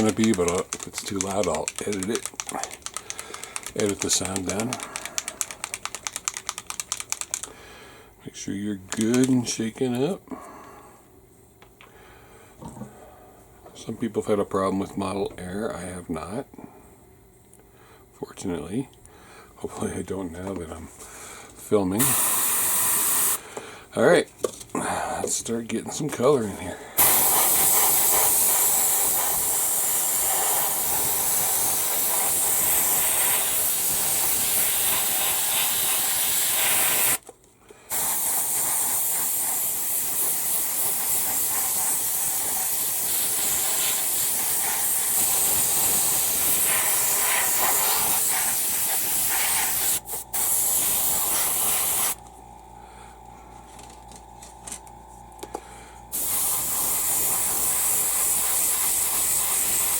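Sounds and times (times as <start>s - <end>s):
airbrush hissing: 22.0s - 23.4s, 27.0s - 37.2s, 37.9s - 52.2s, 56.1s - 59.9s
faint low hum: 52.2s - 56.1s.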